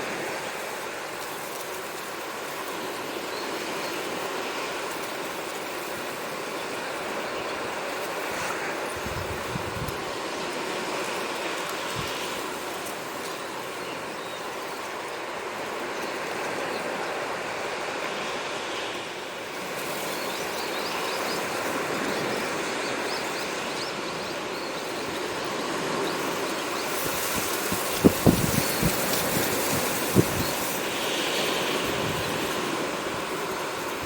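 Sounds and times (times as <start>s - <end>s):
sea waves on shore: 0.0s - 34.0s
small birds chirping: 19.8s - 32.3s.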